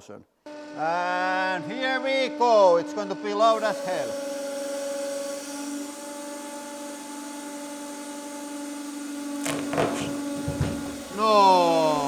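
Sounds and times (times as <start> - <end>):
hydraulic pump humming: 0.5 - 12.0
rope strands snapping: 9.4 - 10.8.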